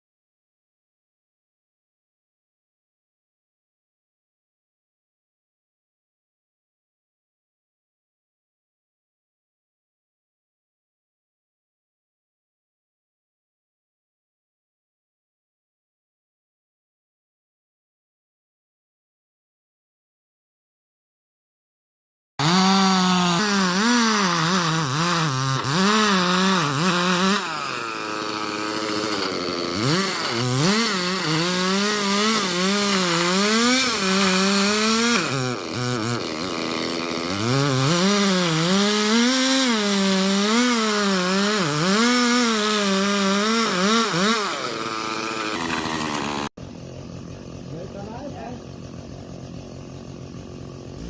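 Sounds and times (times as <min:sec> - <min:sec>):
chainsaw cutting wood: 0:22.4 - 0:48.6, 0:49.2 - 0:51.0.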